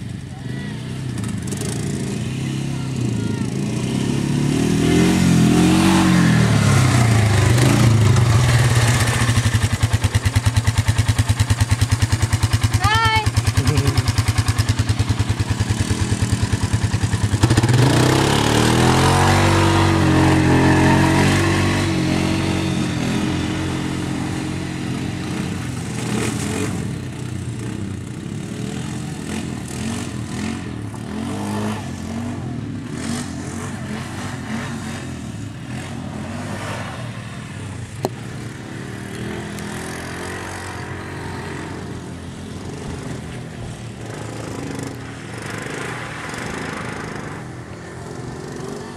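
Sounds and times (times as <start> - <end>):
atv engine revving: 0.0 - 48.9.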